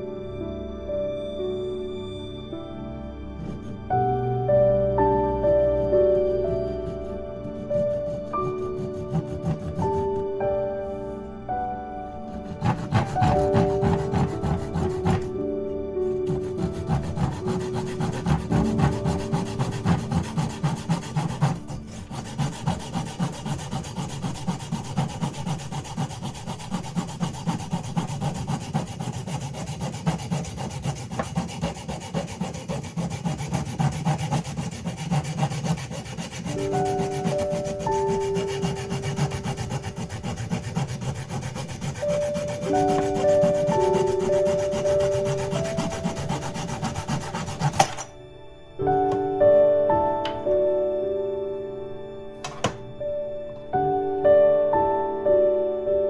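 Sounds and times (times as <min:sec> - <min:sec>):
soft melodic music: 0:00.0 - 0:56.0
hand saw cutting wood: 0:03.4 - 0:03.8, 0:06.2 - 0:10.2, 0:12.3 - 0:15.4, 0:16.2 - 0:48.1.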